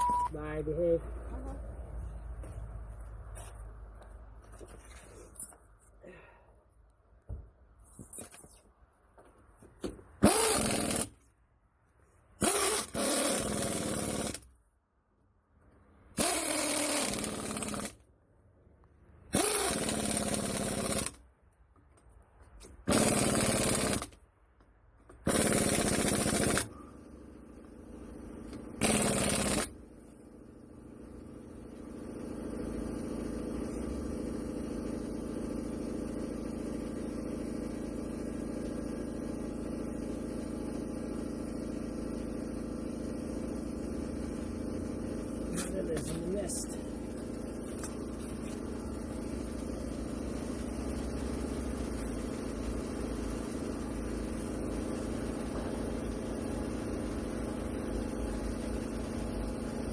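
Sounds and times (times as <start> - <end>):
impact wrench bursts: 10.2 - 11.3, 12.4 - 14.5, 16.1 - 18.0, 19.3 - 21.2, 22.6 - 24.2, 25.1 - 59.9.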